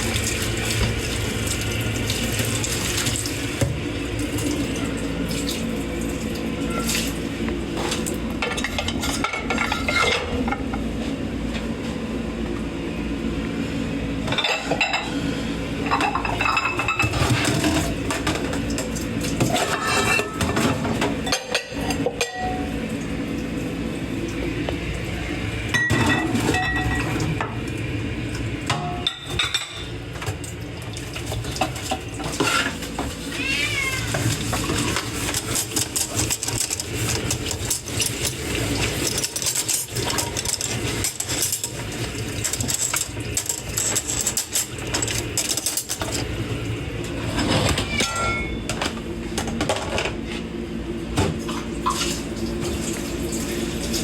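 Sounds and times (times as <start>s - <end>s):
dishes and cutlery clinking: 8.4s - 10.6s, 15.8s - 18.5s, 19.4s - 22.7s, 47.4s - 48.9s
cat meowing: 33.3s - 34.2s.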